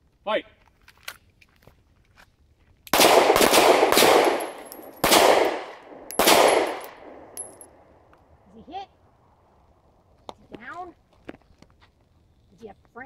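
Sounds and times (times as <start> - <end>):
pistol shots ringing: 2.9 - 7.8.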